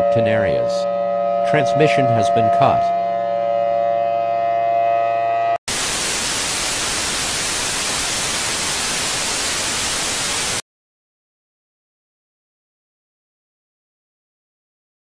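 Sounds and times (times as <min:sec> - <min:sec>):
broadcast static: 0:05.7 - 0:10.6.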